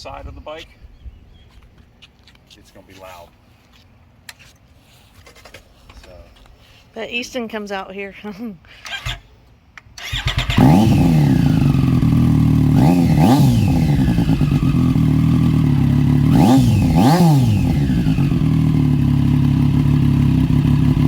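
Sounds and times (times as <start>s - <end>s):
motorcycle engine idling loudly: 10.6s - 21.0s.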